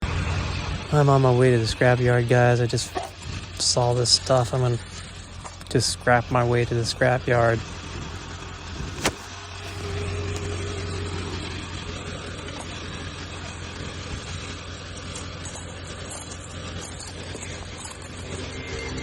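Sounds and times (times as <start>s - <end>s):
road noise: 0.0s - 19.0s
vehicle engine hum: 0.0s - 19.0s
sharp click: 9.0s - 9.4s.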